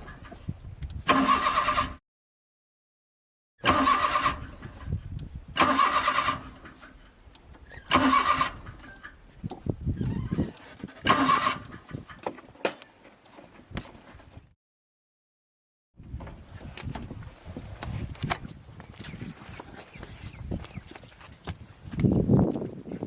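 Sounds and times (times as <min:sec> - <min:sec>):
car starter motor cranking: 0:01.0 - 0:02.0, 0:03.6 - 0:07.0, 0:07.6 - 0:09.1, 0:10.1 - 0:11.9.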